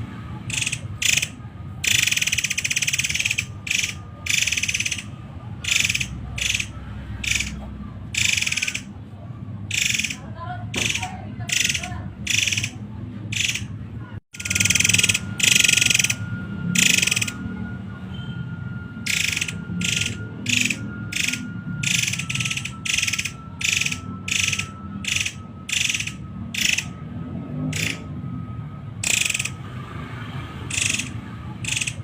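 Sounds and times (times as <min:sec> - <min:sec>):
bird harsh rattling calls: 0:00.5 - 0:08.9, 0:09.7 - 0:13.7, 0:14.4 - 0:16.2, 0:16.8 - 0:17.4, 0:19.1 - 0:27.0, 0:27.8 - 0:28.1, 0:29.0 - 0:29.6, 0:30.7 - 0:32.0
faint steady high tone: 0:13.5 - 0:32.0.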